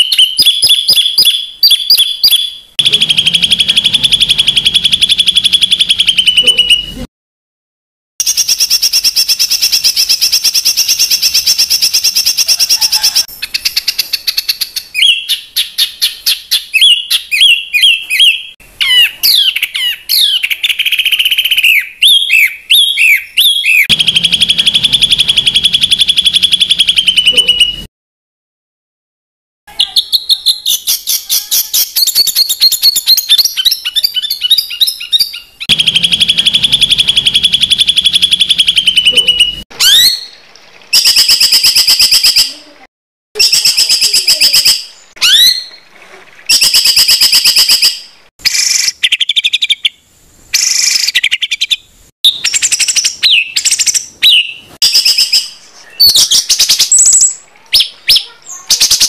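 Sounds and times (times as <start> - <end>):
songbird trilling: 0.0 - 7.0, 30.0 - 40.2
rough burst bird phrases: 0.1 - 7.1, 23.0 - 27.9, 35.0 - 39.6.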